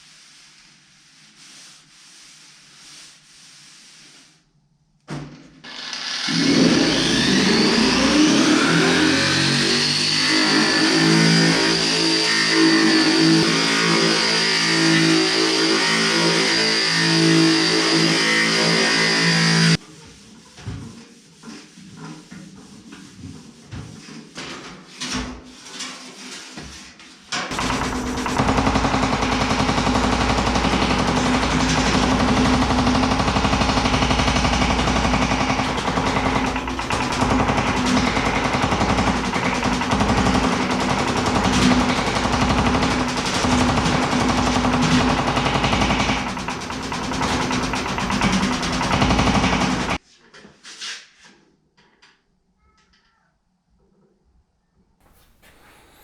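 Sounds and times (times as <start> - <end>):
power hammer pounding sheet steel: 5.9 - 19.8, 27.5 - 50.0.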